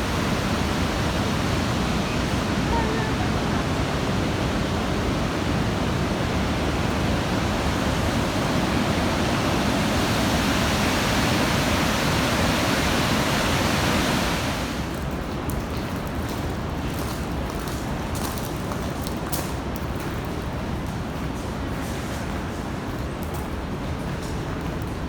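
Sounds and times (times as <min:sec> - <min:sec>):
river rushing whitewater: 0:00.0 - 0:14.9.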